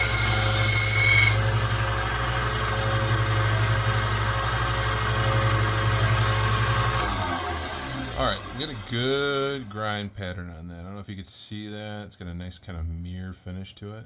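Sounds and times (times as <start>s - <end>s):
knife grinding on belt sander: 0.0s - 9.4s
belt sander motor humming: 0.0s - 9.8s.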